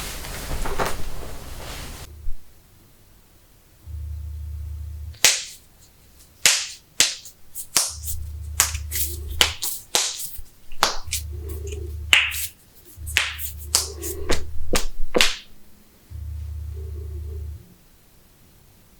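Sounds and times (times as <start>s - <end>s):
low hum: 2.0s - 6.4s, 7.4s - 9.6s, 10.4s - 18.4s.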